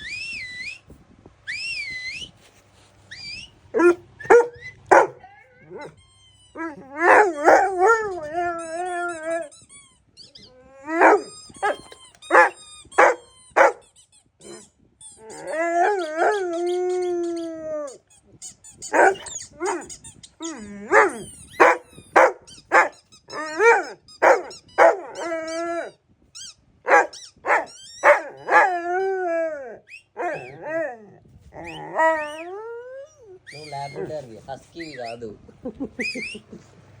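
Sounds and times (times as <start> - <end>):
dog barking: 3.8 - 6.0, 7.0 - 8.1, 11.0 - 13.8, 18.9 - 19.9, 20.9 - 25.3, 26.9 - 28.7
dog howling: 3.8 - 9.5, 10.6 - 13.8, 15.3 - 17.9, 18.9 - 25.9, 26.9 - 34.1.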